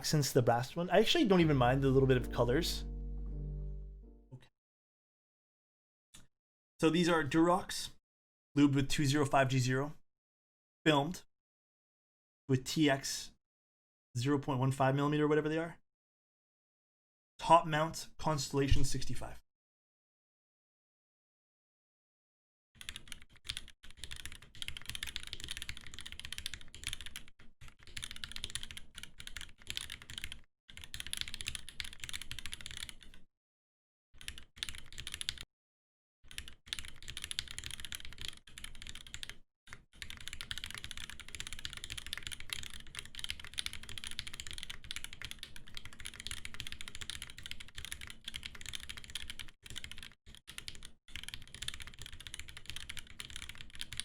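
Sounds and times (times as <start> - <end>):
mechanical keyboard keystroke clacks: 36.3 - 39.4, 40.0 - 54.0.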